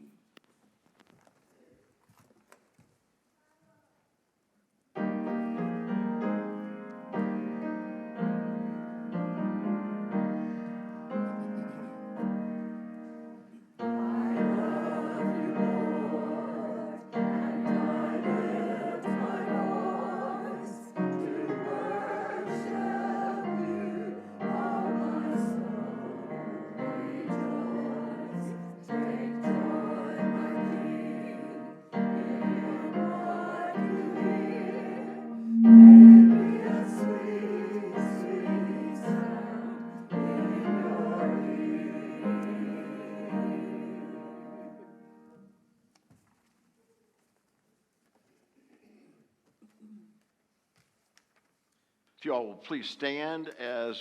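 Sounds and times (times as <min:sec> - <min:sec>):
slow piano chords: 0:35.1 - 0:37.2.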